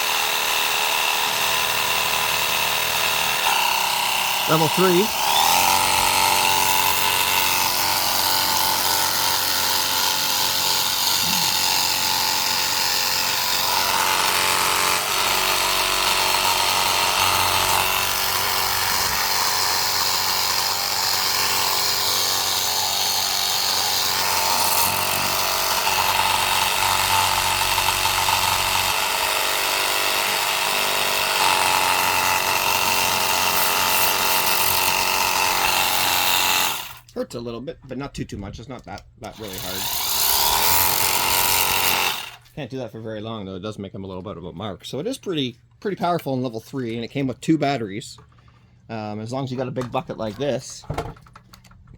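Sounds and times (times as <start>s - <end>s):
electric pump motor whine: 0.0s - 12.6s.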